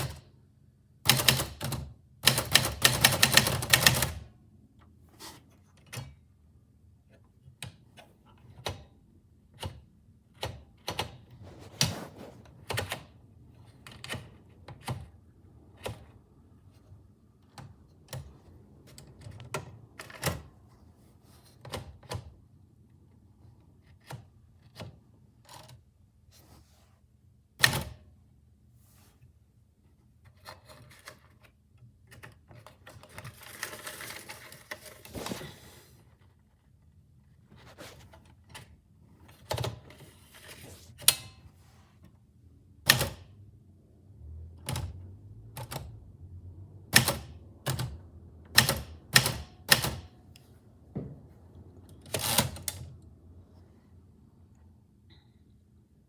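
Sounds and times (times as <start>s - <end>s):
typewriter keys striking: 1.1s - 4.3s
typewriter mechanical noise: 1.1s - 4.3s, 46.9s - 50.2s, 52.0s - 52.9s.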